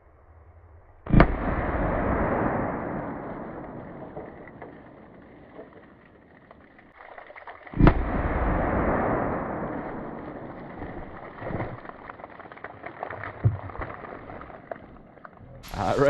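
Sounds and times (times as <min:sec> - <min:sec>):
revolver gunshot: 0:01.0 - 0:05.4, 0:07.8 - 0:10.6.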